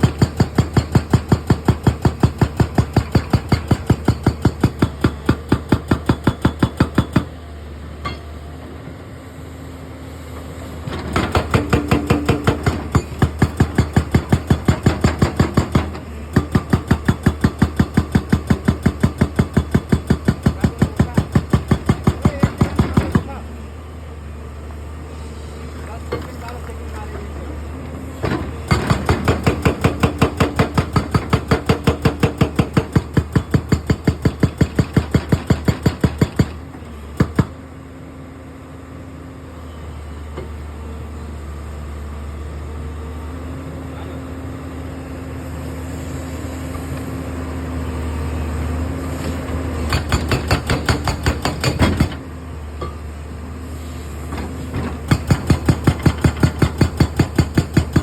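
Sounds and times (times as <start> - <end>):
hydraulic rock breaker hammering: 0.0 - 7.3, 10.9 - 23.5, 28.2 - 37.6, 49.2 - 53.0, 54.2 - 58.0.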